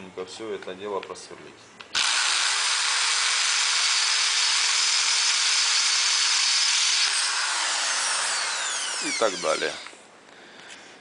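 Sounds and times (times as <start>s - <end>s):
electric drill boring steel: 2.0s - 9.9s.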